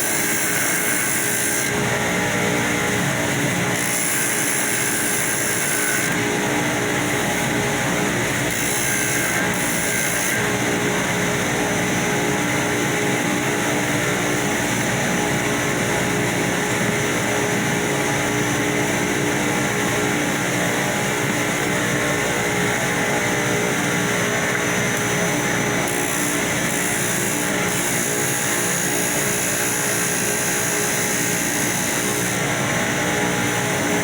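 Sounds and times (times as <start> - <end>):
power sander running: 0.0 - 20.0.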